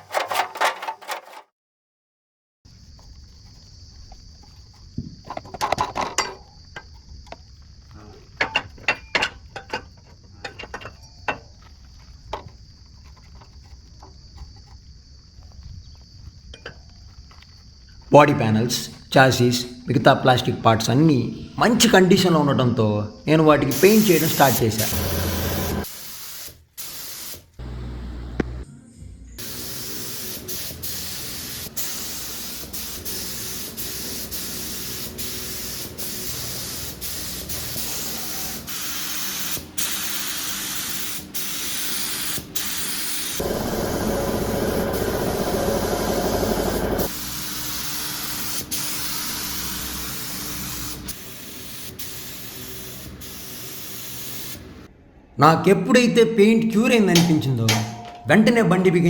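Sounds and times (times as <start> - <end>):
paint spray hissing: 23.7 - 28.6, 29.4 - 54.8.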